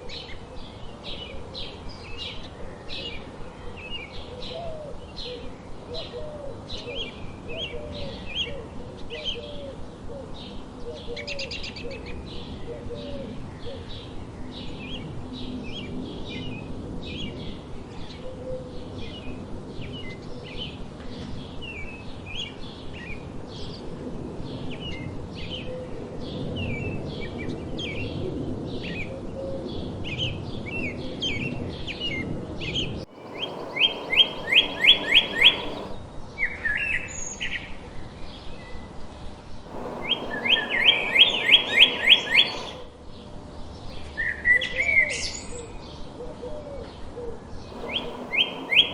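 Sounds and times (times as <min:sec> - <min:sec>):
bird chirping: 0:33.1 - 0:36.0, 0:39.7 - 0:42.9, 0:47.7 - 0:48.9
bird trilling: 0:33.1 - 0:36.0, 0:39.7 - 0:42.9, 0:47.7 - 0:48.9
low background rumble: 0:33.1 - 0:36.0, 0:39.7 - 0:42.9, 0:47.7 - 0:48.9.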